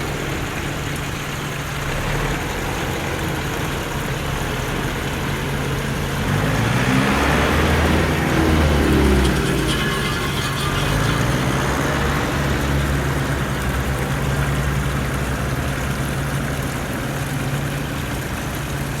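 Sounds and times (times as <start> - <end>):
toy vehicles humming: 3.2 - 18.3.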